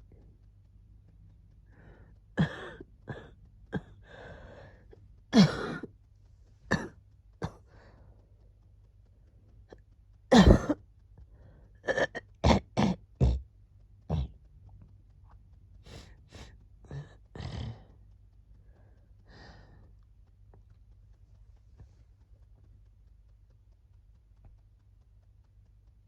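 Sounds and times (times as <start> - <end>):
person coughing: 2.4 - 4.3, 5.4 - 5.9, 6.7 - 7.6, 10.3 - 10.8, 11.8 - 13.4.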